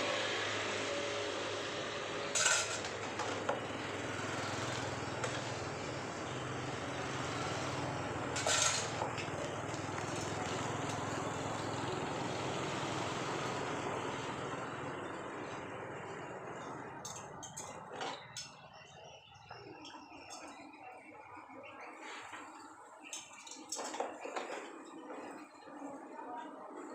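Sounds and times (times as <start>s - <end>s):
dishware clinking: 2.4s - 2.9s.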